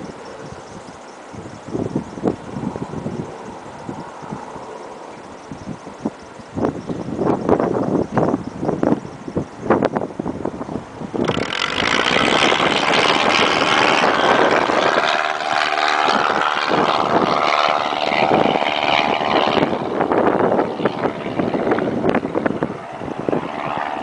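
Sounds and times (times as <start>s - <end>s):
light plane passing: 0.0s - 24.0s
wind buffeting microphone: 0.0s - 24.0s.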